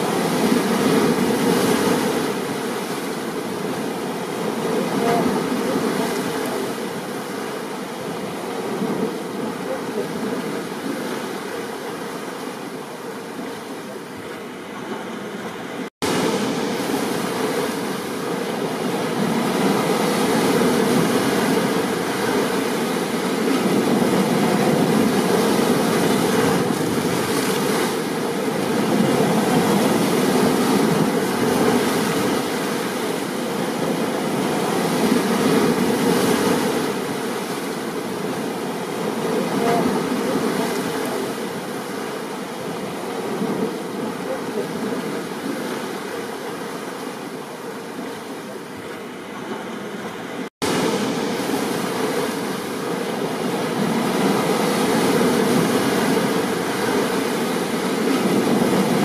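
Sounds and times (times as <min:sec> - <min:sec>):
stormy ocean surf: 0:00.0 - 0:59.0.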